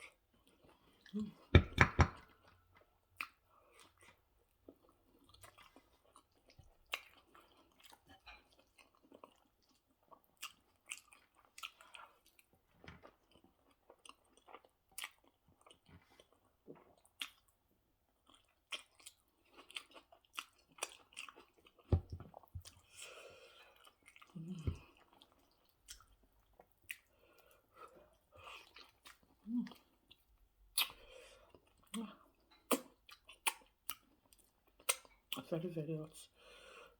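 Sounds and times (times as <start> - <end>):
wet chewing and lip smacks: 3.2 - 17.6, 18.2 - 23.0, 23.7 - 35.4.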